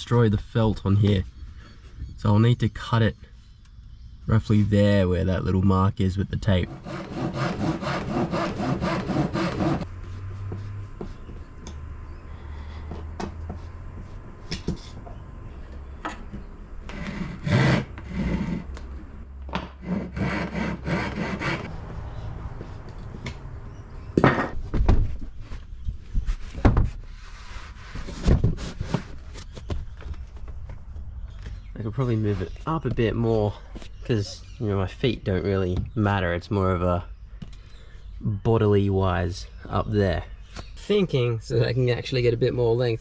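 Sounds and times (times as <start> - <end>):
hand saw cutting wood: 6.5 - 9.9, 16.9 - 18.8, 19.8 - 21.7.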